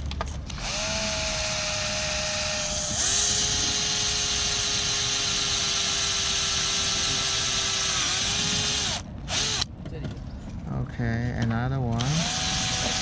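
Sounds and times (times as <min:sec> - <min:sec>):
electric drill whining: 0:00.5 - 0:09.7, 0:12.0 - 0:13.0.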